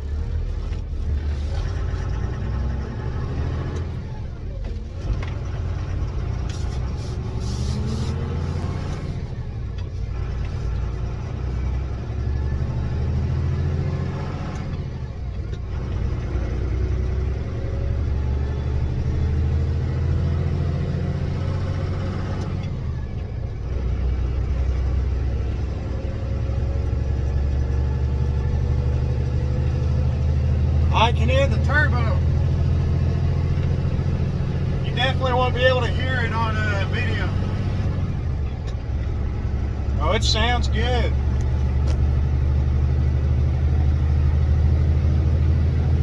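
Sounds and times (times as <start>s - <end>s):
diesel truck accelerating through gears: 0.0s - 46.0s.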